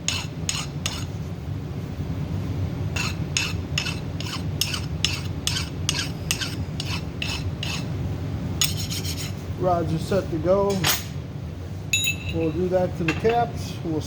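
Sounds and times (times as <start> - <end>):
hand file scraping steel: 0.0 - 1.1, 2.9 - 7.9, 8.6 - 9.4
low hum: 11.8 - 12.7.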